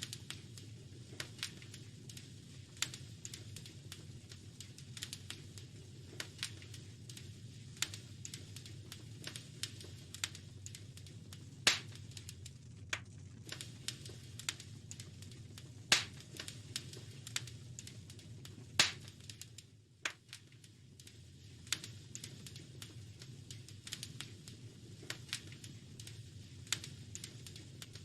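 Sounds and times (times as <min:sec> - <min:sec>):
low steady rumble: 0:00.0 - 0:28.0
wood fire crackling: 0:00.0 - 0:28.0
loud sharp pops: 0:11.7 - 0:12.0, 0:15.9 - 0:16.2, 0:18.8 - 0:19.2.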